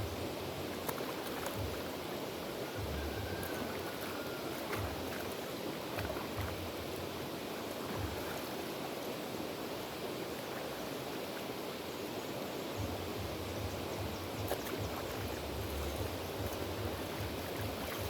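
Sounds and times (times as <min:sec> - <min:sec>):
river water rushing: 0:00.0 - 0:18.0
faint low bumps: 0:02.8 - 0:03.7, 0:07.9 - 0:08.4, 0:12.8 - 0:18.0.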